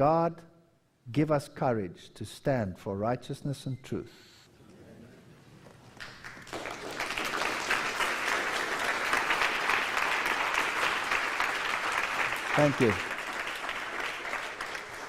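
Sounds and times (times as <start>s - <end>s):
audience applauding: 6.0s - 15.0s.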